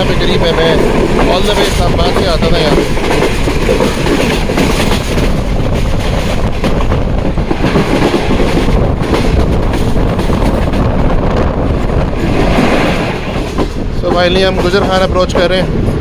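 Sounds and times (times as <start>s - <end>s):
wheels clicking over rail joints: 0.0s - 10.9s
train coach rumbling and rattling: 0.0s - 16.0s.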